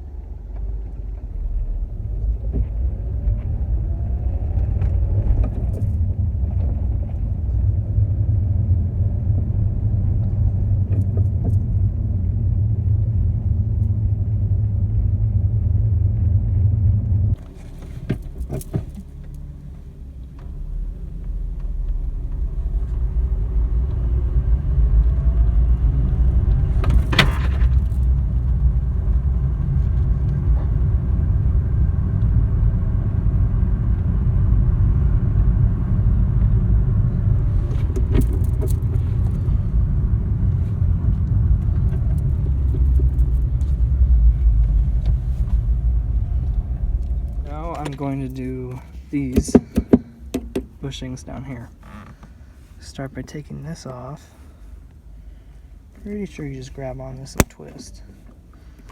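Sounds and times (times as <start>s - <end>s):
car engine while driving: 0.0s - 58.9s
road noise inside car cabin: 0.0s - 58.9s
sharp clicks or knocks: 57.4s - 57.6s.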